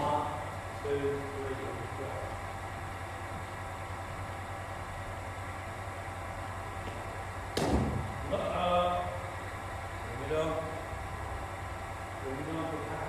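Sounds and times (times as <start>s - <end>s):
steady low hum: 0.0s - 13.0s
cricket bat striking ball: 7.6s - 8.1s.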